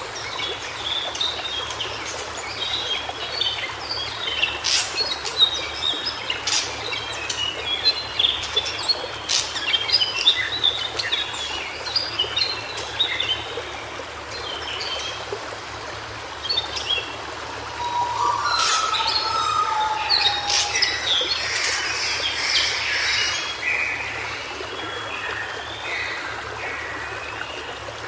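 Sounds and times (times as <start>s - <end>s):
steady background hiss: 0.0s - 28.0s
bird singing rapid warble: 16.4s - 26.0s.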